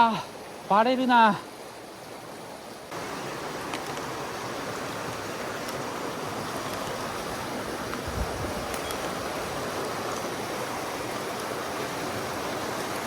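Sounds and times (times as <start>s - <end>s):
stream rushing over rocks: 0.0s - 13.0s.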